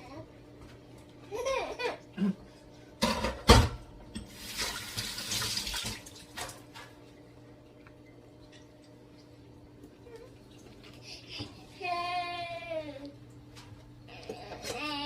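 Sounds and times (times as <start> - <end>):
tap water running into sink: 4.2 - 6.8.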